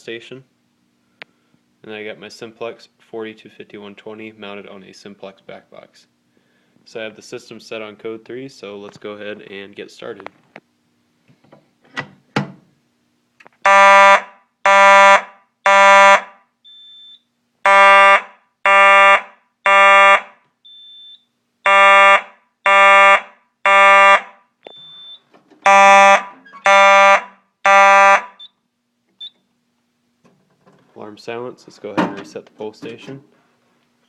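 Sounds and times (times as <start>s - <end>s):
buzzy fire alarm horn blasts: 13.6s - 28.5s.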